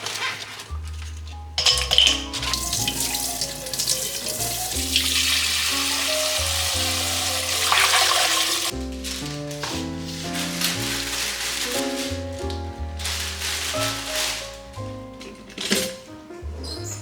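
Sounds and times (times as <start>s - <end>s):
background music: 0.0s - 17.0s
tap water running into sink: 1.9s - 8.7s.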